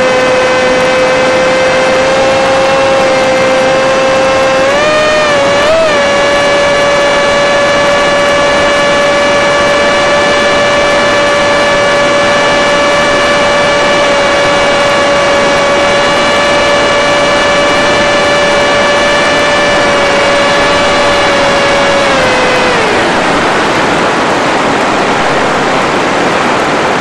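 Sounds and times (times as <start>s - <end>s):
model plane motor whining: 0.0s - 26.4s.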